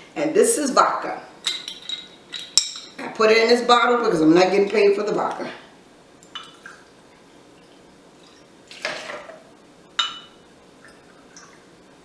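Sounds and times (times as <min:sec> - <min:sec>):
glass clink: 0:01.4 - 0:03.0, 0:10.0 - 0:10.4.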